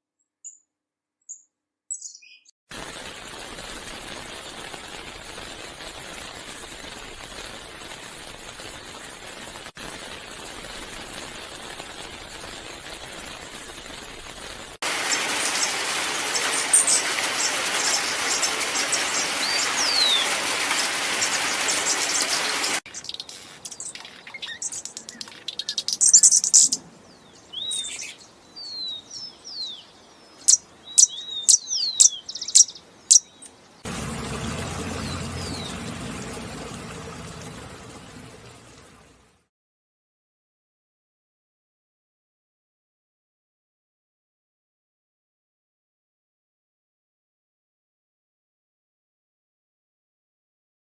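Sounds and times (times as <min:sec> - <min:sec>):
small birds chirping: 0:00.2 - 0:02.5, 0:14.9 - 0:33.9
loud rushing noise: 0:33.9 - 0:38.8.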